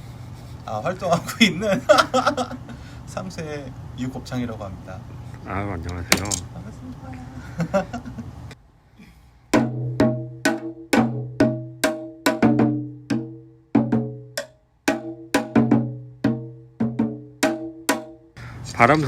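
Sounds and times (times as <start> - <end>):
steady low hum: 0.0 - 9.5, 18.3 - 19.0.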